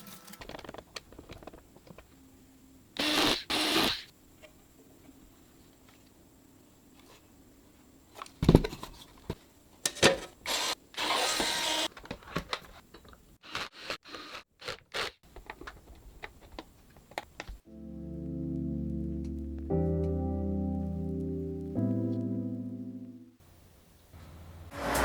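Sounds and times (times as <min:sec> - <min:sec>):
music: 0:17.7 - 0:23.4.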